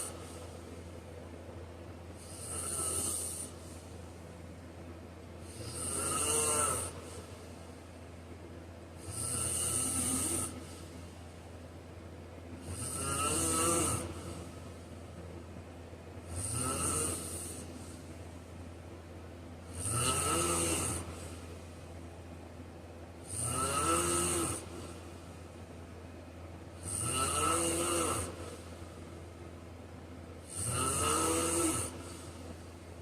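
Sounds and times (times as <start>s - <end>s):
steady low hum: 0.0s - 33.0s
man snoring: 2.2s - 3.8s, 5.4s - 7.5s, 9.0s - 11.2s, 12.6s - 14.6s, 16.2s - 18.1s, 19.6s - 21.4s, 23.2s - 25.0s, 26.8s - 28.8s, 30.4s - 32.5s.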